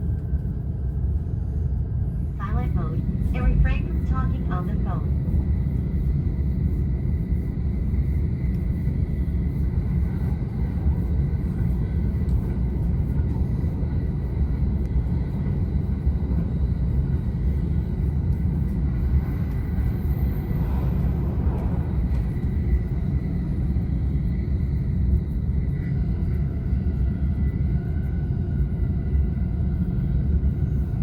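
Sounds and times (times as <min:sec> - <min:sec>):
train wheels rumbling on rails: 0:07.9 - 0:31.0.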